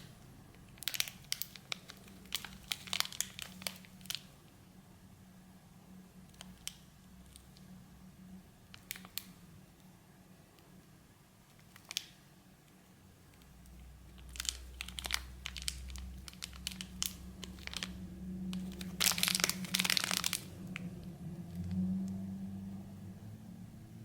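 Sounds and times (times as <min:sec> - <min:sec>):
wrapper crinkling and tearing: 0:00.0 - 0:04.3, 0:08.7 - 0:09.4, 0:11.6 - 0:12.2, 0:14.1 - 0:22.1.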